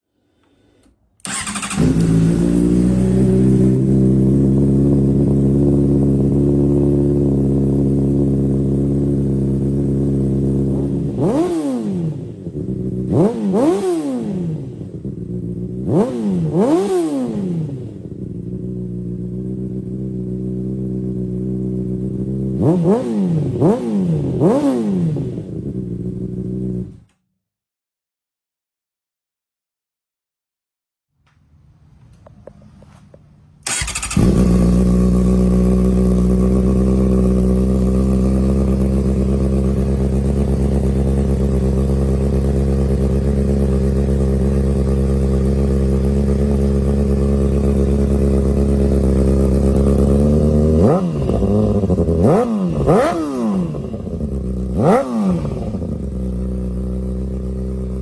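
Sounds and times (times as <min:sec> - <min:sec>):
motorcycle engine idling: 0:01.2 - 0:11.2, 0:18.0 - 0:22.6, 0:33.6 - 0:58.0
motorcycle engine revving: 0:01.2 - 0:27.1, 0:33.6 - 0:58.0.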